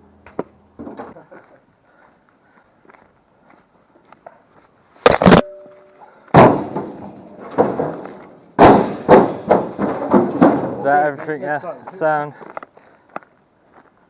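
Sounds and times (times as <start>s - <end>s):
scrap metal clanking onto truck: 6.4s - 11.0s.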